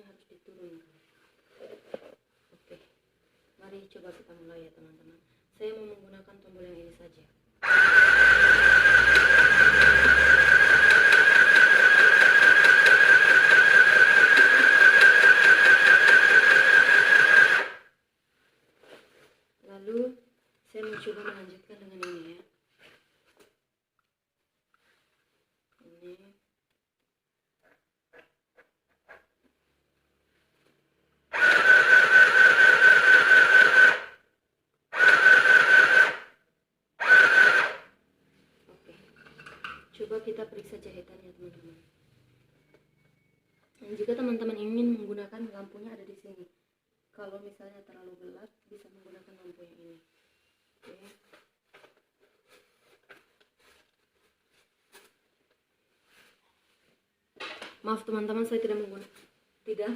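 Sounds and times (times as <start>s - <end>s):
sewing machine motor whine: 7.6s - 17.8s, 31.3s - 34.2s, 35.0s - 36.3s, 37.0s - 37.9s.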